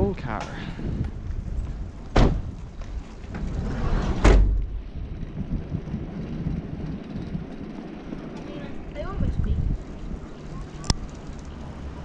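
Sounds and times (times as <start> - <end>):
rumbling handling noise: 0.4 - 12.0
loud thump: 2.1 - 2.5, 4.2 - 4.8.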